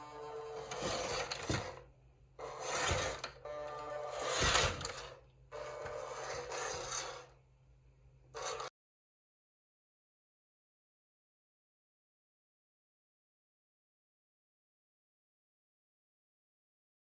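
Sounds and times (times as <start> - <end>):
electric motor whirring: 2.4 - 7.3.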